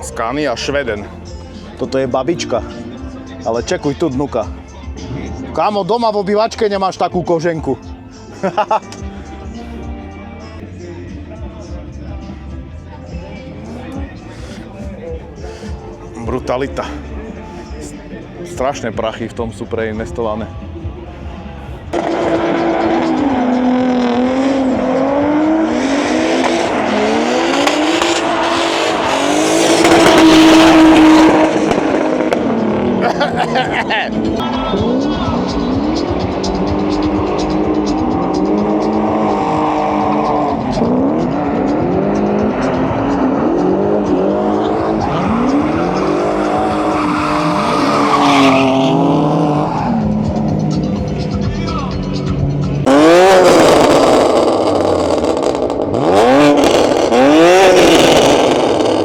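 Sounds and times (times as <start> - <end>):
car engine revving: 19.6 - 59.0
tyres squealing: 45.0 - 52.6.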